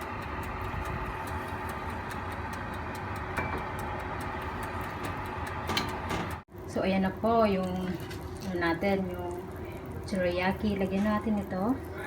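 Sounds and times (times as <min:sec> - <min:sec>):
timer ticking: 0:00.0 - 0:05.7
oven humming: 0:00.0 - 0:12.0.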